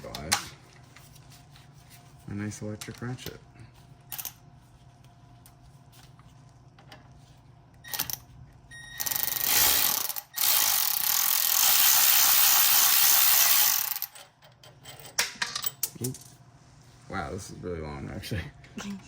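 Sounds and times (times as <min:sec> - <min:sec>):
electric ratchet running: 0:09.0 - 0:14.2.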